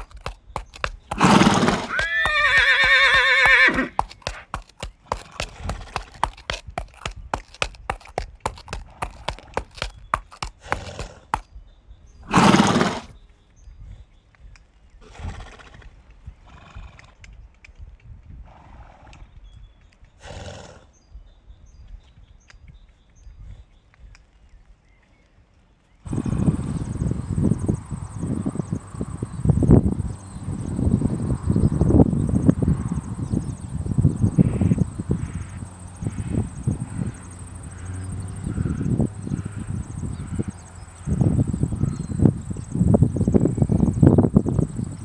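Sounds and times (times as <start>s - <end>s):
horse whinnying: 0.0s - 6.5s, 12.2s - 13.1s, 26.1s - 43.5s
horse snorting: 0.0s - 11.4s, 12.2s - 13.1s, 26.1s - 45.0s
hooves clopping: 0.0s - 11.5s, 12.2s - 13.1s, 26.1s - 45.0s.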